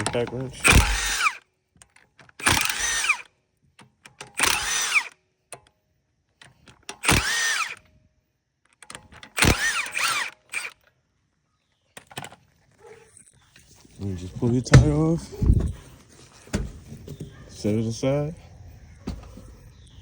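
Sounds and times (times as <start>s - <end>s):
impact wrench loosening nuts: 0.0s - 5.1s.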